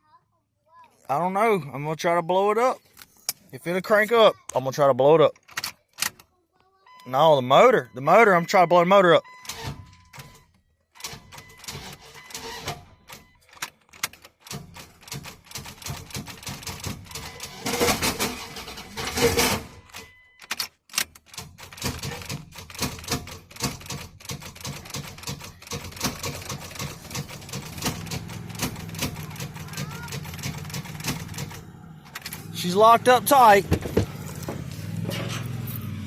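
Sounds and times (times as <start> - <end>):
hand tools clanking on metal: 17.2 - 19.8, 25.0 - 32.9.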